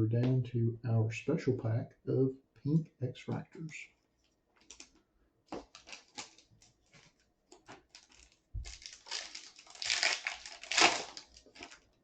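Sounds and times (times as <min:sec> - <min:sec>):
cards clicking and rustling: 0:04.6 - 0:11.9
foil pack thump and crinkle: 0:07.0 - 0:11.8.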